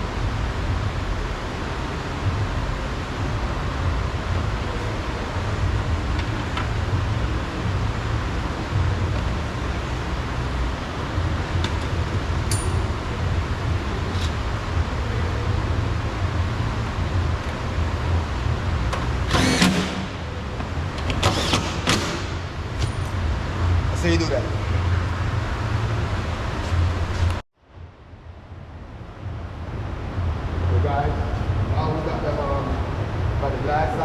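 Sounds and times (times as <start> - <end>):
outdoor rumble and hiss: 0.0 - 34.0.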